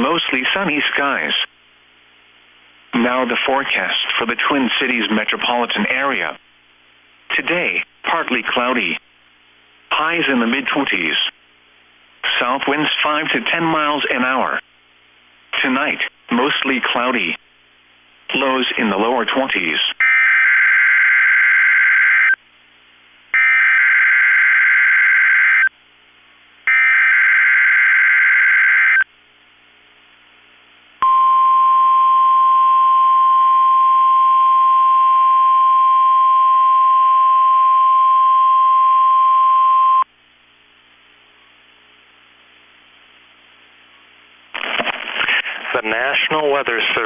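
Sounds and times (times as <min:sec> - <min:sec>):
steady warning alarm tone: 0:23.4 - 0:25.7, 0:26.7 - 0:29.0.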